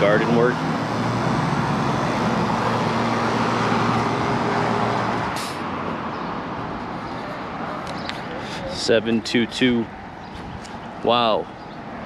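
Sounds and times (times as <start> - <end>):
vehicle driving past: 0.0 - 8.6.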